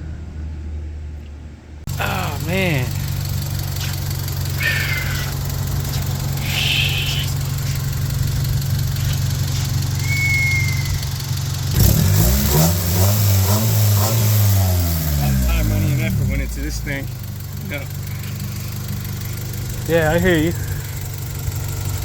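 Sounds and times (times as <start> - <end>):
car engine idling and revving: 0.0 - 22.0.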